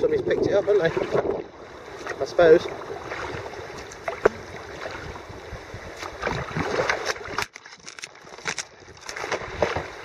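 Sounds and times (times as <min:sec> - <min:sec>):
kayak paddle strokes: 0:00.8 - 0:10.0
water splashing and dripping: 0:02.0 - 0:05.1, 0:05.9 - 0:10.0.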